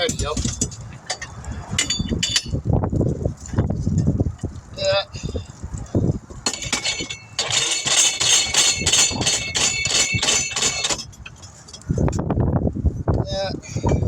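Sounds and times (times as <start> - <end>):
tire changing machine clinking: 0.0 - 2.6, 6.4 - 12.0.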